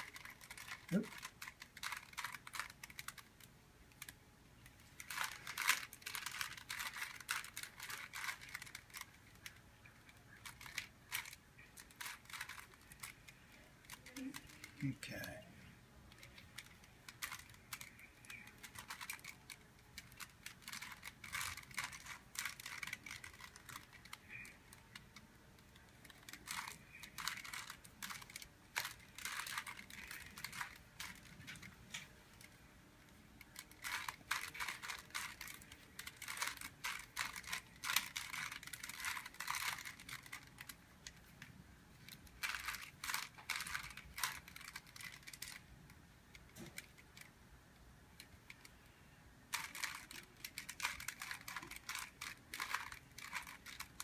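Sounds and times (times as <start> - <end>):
puzzle cube plastic clicking: 0.0 - 15.4, 16.1 - 48.9, 49.5 - 54.0.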